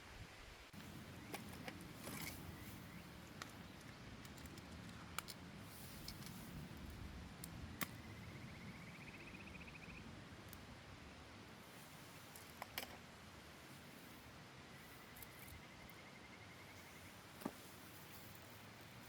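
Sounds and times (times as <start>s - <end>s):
crackles and pops: 0.8s - 9.3s.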